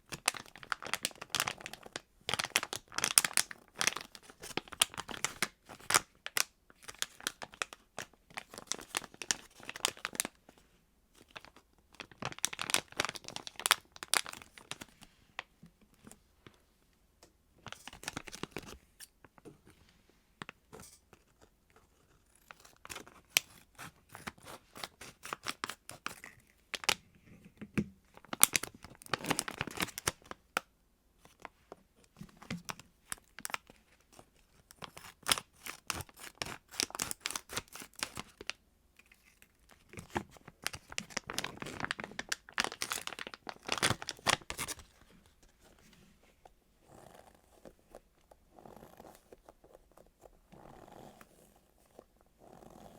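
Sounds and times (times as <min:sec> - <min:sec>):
squeeze toys crinkling: 0:40.5 - 0:45.0.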